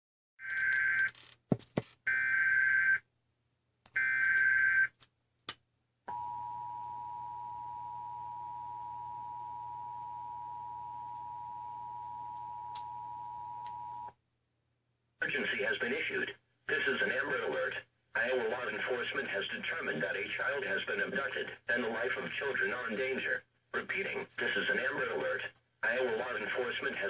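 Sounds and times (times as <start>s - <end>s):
clicks: 3.8s - 5.6s.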